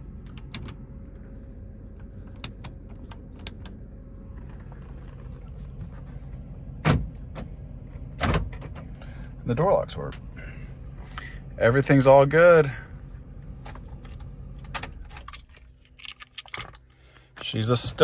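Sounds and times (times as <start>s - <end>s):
car engine idling: 0.0s - 18.0s
power door locks clunking: 6.8s - 9.0s, 13.6s - 15.6s.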